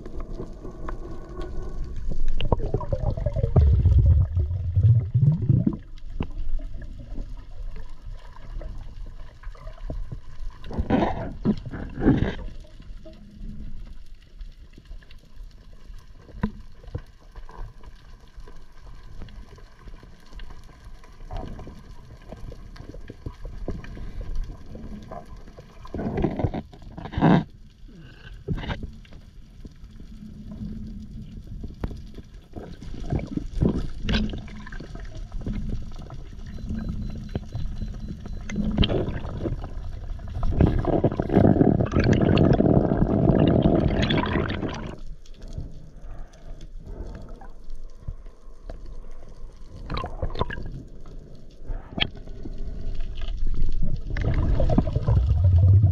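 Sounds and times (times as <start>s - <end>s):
low rumbling water wash: 0.0s - 6.0s, 54.1s - 55.9s.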